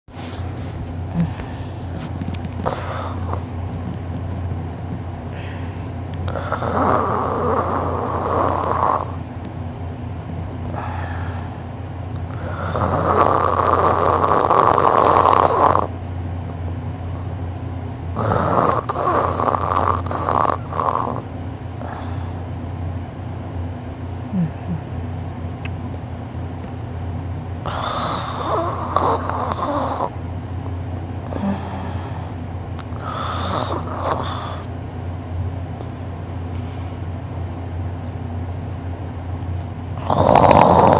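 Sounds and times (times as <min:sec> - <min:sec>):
steady low hum: 0:00.1 - 0:40.9
man snoring loudly: 0:06.3 - 0:09.2, 0:12.3 - 0:15.9, 0:18.2 - 0:21.3, 0:27.7 - 0:30.2, 0:33.0 - 0:34.7, 0:40.0 - 0:40.9.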